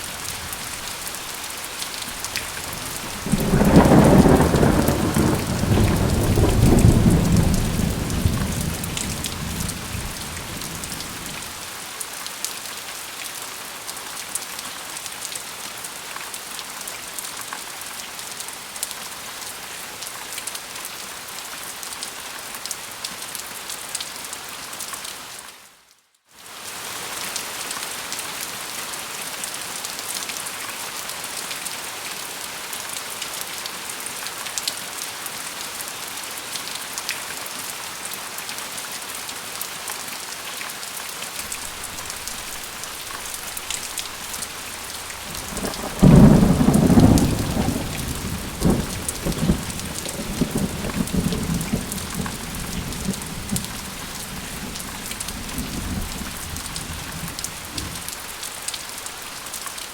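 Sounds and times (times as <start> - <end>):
thunder clap and rumble: 0.0 - 11.6, 41.5 - 58.4
steady rain falling: 0.0 - 25.6, 26.4 - 59.9.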